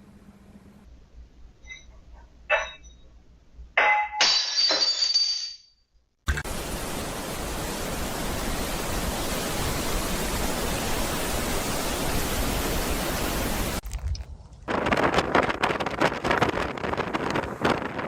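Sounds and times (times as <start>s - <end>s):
steady rushing hiss: 6.4s - 13.8s.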